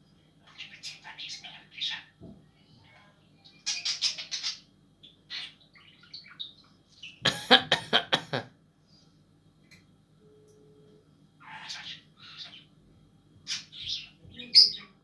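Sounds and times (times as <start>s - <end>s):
budgerigar chattering and chirping: 0.5s - 2.1s, 3.6s - 7.2s, 11.4s - 12.7s, 13.5s - 15.0s.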